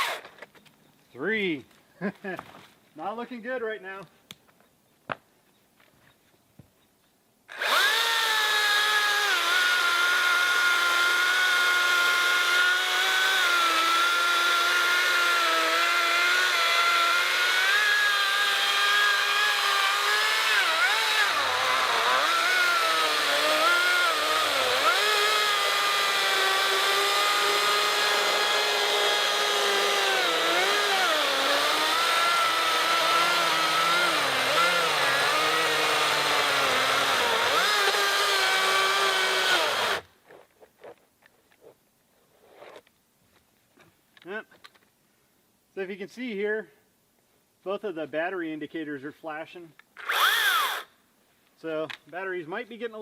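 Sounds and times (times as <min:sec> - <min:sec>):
cordless chainsaw cutting log: 0:00.0 - 0:00.4, 0:07.5 - 0:40.1, 0:50.0 - 0:50.9.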